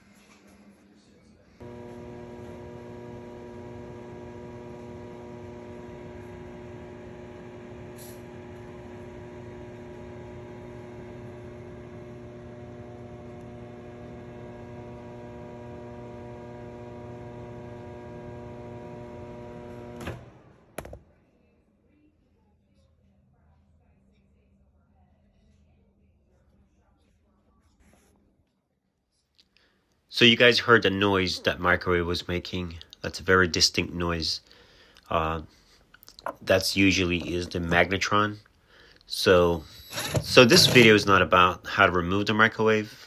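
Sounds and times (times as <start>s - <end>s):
microwave oven buzzing hum: 1.6s - 21.0s, 39.3s - 42.5s.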